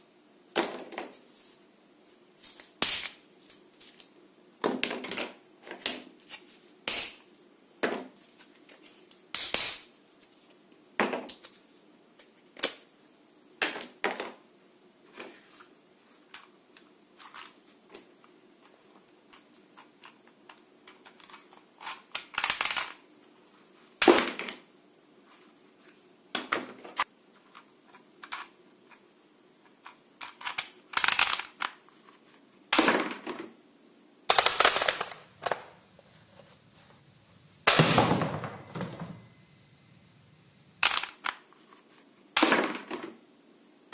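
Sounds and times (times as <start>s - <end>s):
plastic toy guns clicking: 21.8s - 23.0s, 30.2s - 31.8s, 34.3s - 35.7s, 40.8s - 41.4s.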